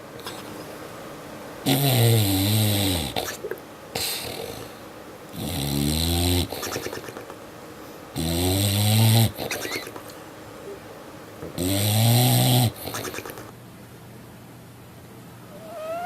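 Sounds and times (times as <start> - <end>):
animal snoring: 1.6 - 7.2, 8.2 - 10.0, 11.4 - 13.5.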